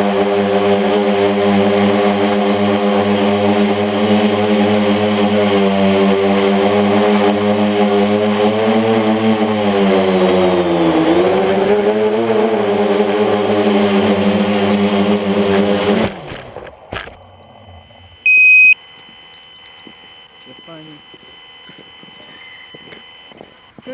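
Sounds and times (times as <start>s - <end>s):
drone propellers whining: 0.0s - 23.9s.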